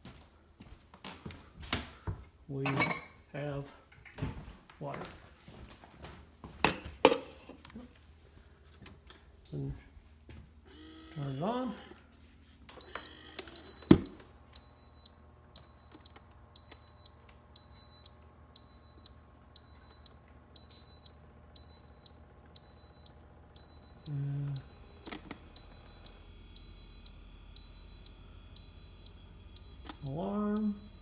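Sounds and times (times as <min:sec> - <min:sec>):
refrigerator alarm beeping: 0:10.7 - 0:11.8, 0:12.7 - 0:31.0.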